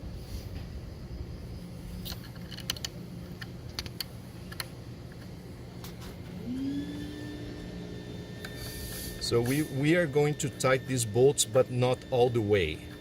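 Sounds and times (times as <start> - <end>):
steady low hum: 0.0 - 13.0
allen wrench handling: 2.0 - 4.6
metallic clicks of small bolts: 2.0 - 5.2
rising steady tone: 6.2 - 13.0.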